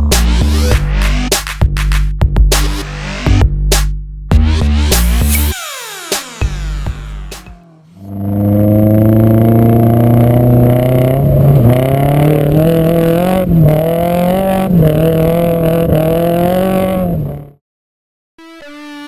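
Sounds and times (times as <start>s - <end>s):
car engine revving high: 4.6s - 17.6s.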